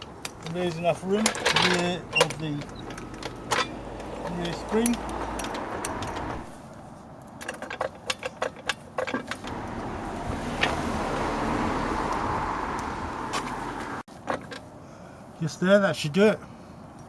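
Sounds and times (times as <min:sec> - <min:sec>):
metallic clinks and rattles: 0:00.0 - 0:06.6
trolley jack rolling and scraping: 0:00.0 - 0:06.6, 0:07.4 - 0:09.7.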